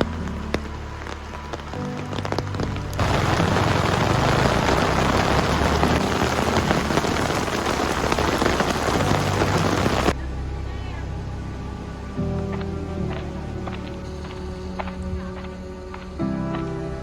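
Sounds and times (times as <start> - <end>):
heavy rain falling: 0.0 - 10.2
soft background music: 0.0 - 17.0.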